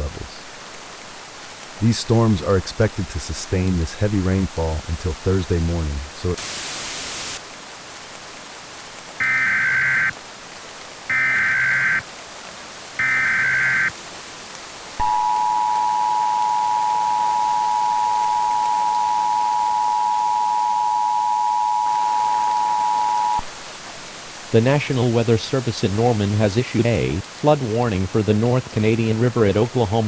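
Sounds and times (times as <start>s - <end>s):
radio hiss: 6.3s - 7.4s
buzzy data tone bursts: 6.4s - 7.4s
two-tone attention signal: 6.4s - 7.4s, 15.0s - 23.4s.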